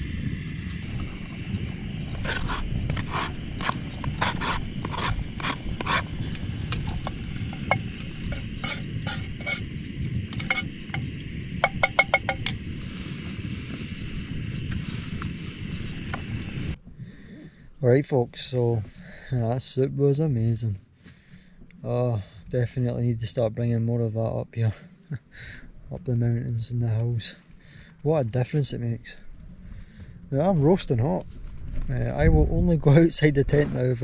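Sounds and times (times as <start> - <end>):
steady low rumble: 0.0 - 34.0
metal spoon scraping metal pot: 2.2 - 6.1, 6.7 - 9.7, 10.3 - 12.6.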